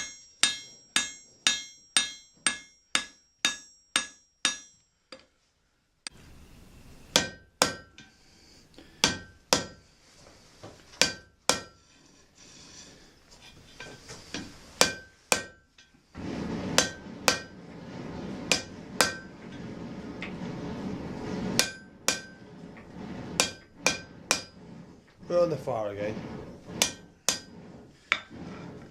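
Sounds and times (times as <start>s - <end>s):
hammer striking iron on anvil: 0.0s - 4.8s, 7.1s - 8.0s, 9.0s - 9.8s, 11.0s - 11.8s, 14.8s - 15.6s, 21.6s - 22.3s
steady rushing noise: 16.2s - 28.9s.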